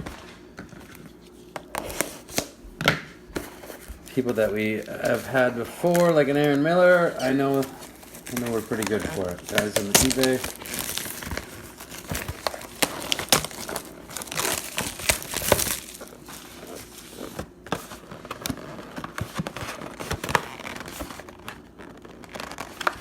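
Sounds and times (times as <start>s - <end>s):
plastic wrapping crinkling and tearing: 3.6s - 23.0s.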